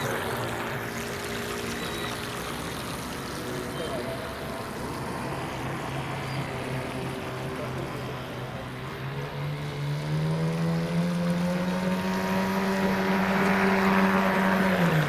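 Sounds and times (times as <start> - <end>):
model boat motor humming: 0.0 - 15.0.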